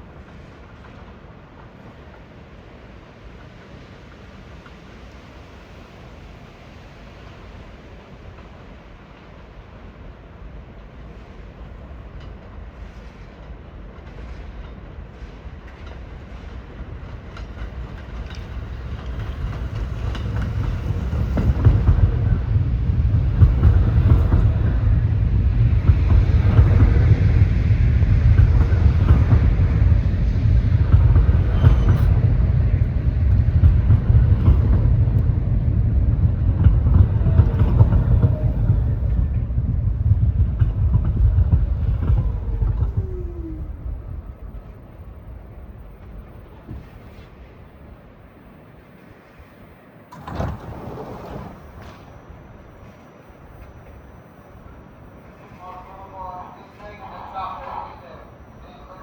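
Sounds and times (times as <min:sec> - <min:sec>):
subway train rumble: 0:00.0 - 0:59.0
wheels clattering on rails: 0:12.1 - 0:47.8, 0:49.3 - 0:54.1.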